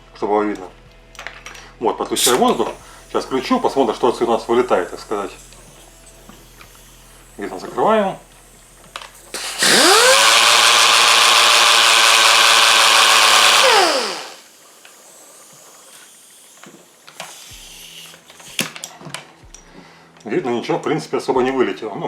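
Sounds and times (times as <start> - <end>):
exhaust air rushing: 2.2 - 14.6
pneumatic sander whining: 2.2 - 18.6.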